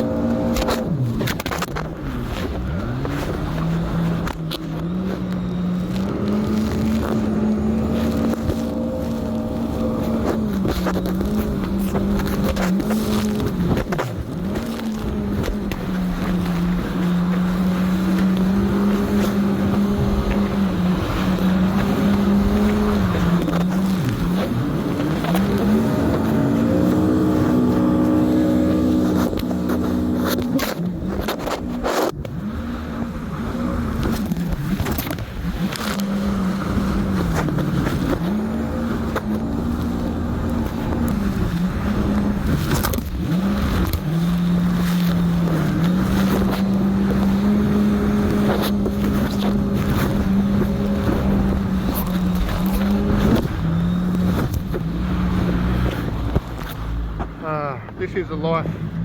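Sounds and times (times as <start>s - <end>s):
jet ski engine running: 0.0s - 59.0s
steady rushing noise: 0.0s - 59.0s.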